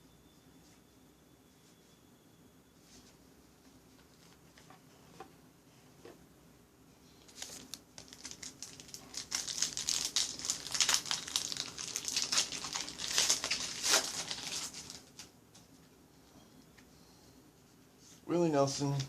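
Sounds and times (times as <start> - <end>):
wrapper crinkling: 7.3 - 15.3.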